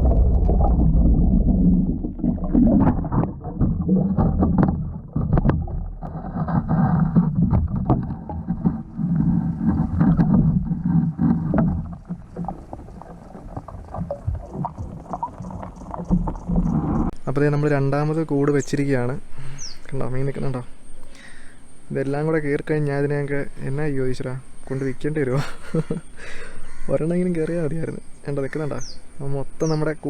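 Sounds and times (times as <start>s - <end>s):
underwater water rumble: 0.0s - 19.3s
sharp knocks and clicks: 2.8s - 17.2s.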